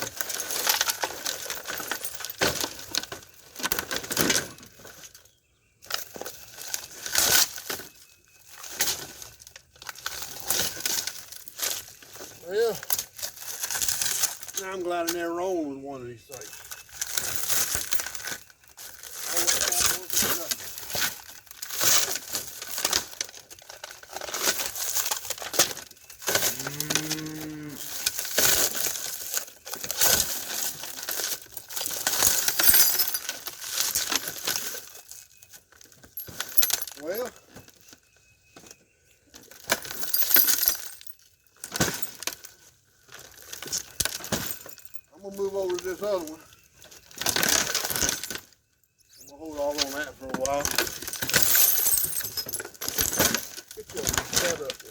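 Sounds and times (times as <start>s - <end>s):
glass and plastic breaking: 0.0s - 5.2s, 5.8s - 15.2s, 16.4s - 38.0s, 39.4s - 48.6s, 49.2s - 54.9s
plastic parts cracking: 16.6s - 37.9s
low moo-like call: 26.5s - 27.9s.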